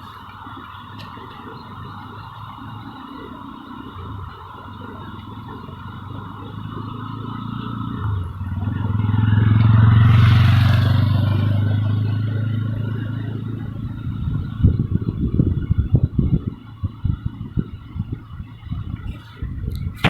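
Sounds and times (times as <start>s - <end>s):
vehicle engine passing by: 5.0s - 16.0s.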